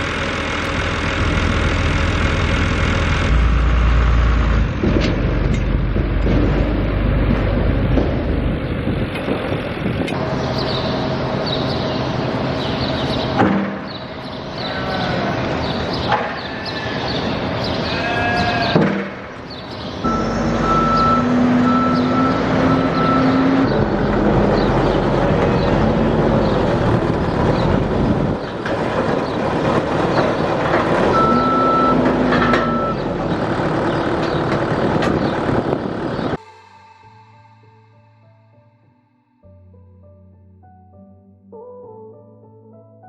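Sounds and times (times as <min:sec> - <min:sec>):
heavy farm machinery running: 0:00.0 - 0:36.4
warning alarm beeps: 0:20.0 - 0:23.7, 0:31.2 - 0:33.1.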